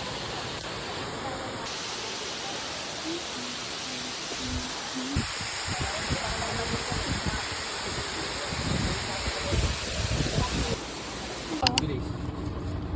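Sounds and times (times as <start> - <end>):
waterfall rushing: 0.0 - 11.6
wind buffeting microphone: 4.4 - 10.8.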